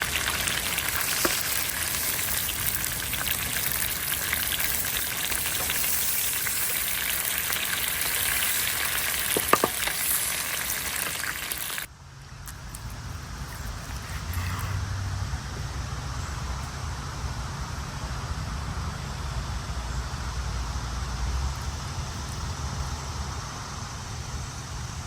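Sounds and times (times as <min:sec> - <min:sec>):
chicken frying in hot oil: 0:00.0 - 0:11.9.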